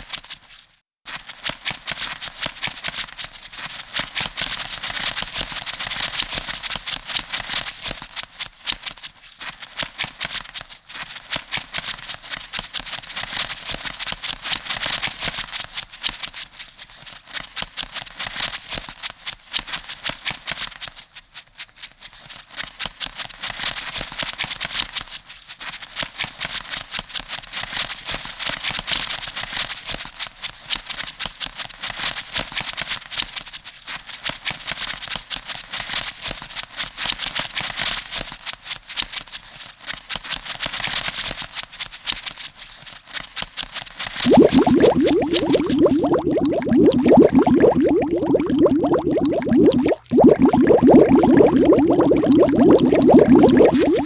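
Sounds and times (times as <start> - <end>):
low bubbling sound: 44.2 - 54.0.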